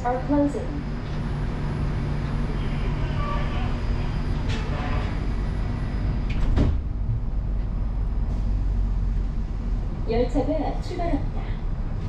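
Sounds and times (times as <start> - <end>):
steady low hum: 0.0 - 12.0
sliding doors clunking shut: 6.2 - 7.3.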